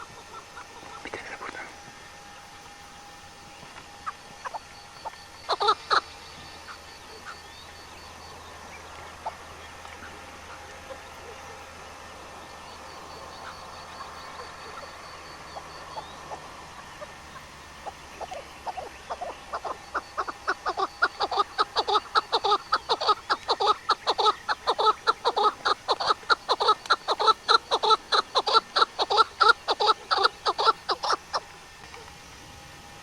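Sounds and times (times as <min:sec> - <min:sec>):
bird calling in fast notes: 0:03.9 - 0:32.1
high ticks: 0:17.0 - 0:32.2.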